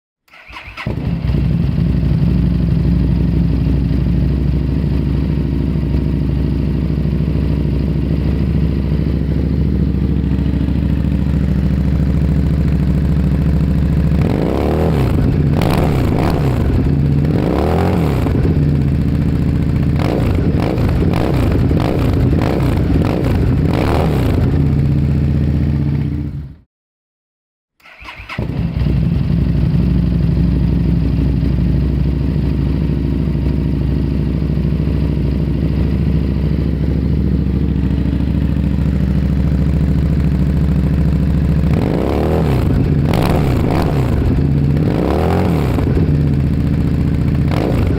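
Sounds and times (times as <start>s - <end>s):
loud engine starting and revving: 0.3s - 4.0s, 14.0s - 25.0s, 27.8s - 31.5s, 41.5s - 47.9s.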